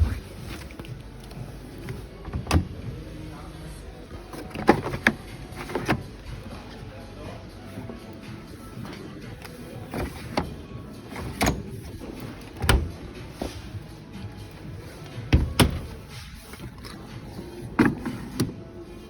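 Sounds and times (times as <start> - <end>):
background music: 0.0 - 19.0
appliance doors and latches clicking: 1.8 - 2.9, 4.3 - 6.2, 9.4 - 13.7, 15.2 - 18.7.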